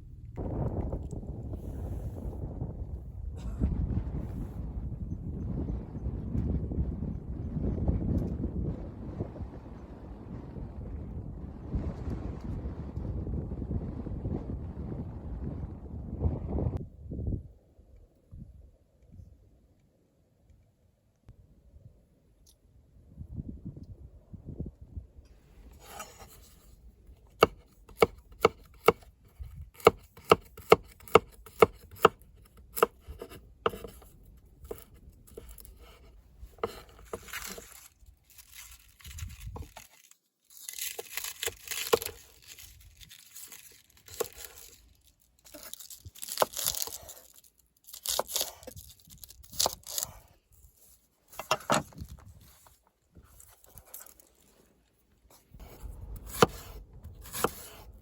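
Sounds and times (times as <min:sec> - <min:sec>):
knife chopping on cutting board: 0:27.4 - 0:29.0, 0:29.8 - 0:32.2, 0:32.8 - 0:34.0, 0:36.6 - 0:37.6, 0:55.6 - 0:57.8
tearing and rustling: 0:32.8 - 0:57.9.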